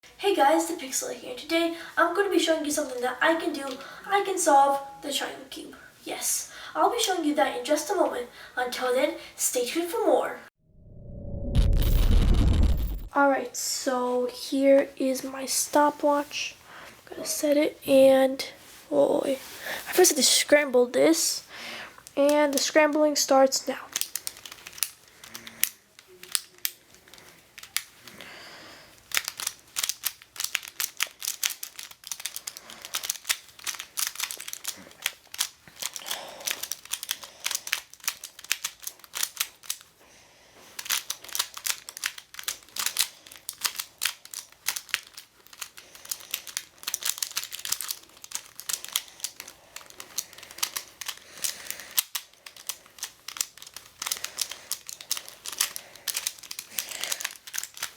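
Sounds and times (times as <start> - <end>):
plastic puzzle clicking: 23.9 - 28.0, 29.1 - 39.9, 40.8 - 57.9.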